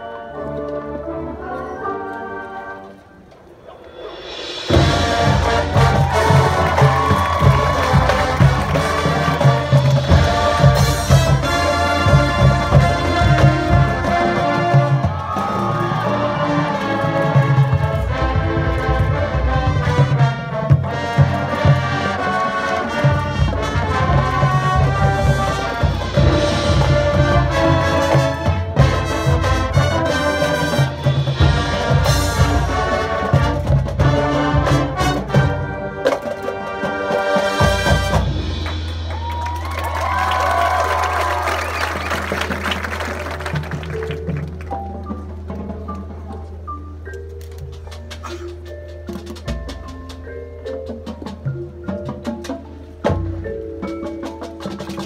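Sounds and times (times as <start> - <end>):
marching band brass: 0.0 - 46.2
steady percussion hits: 4.0 - 21.9, 22.8 - 46.6.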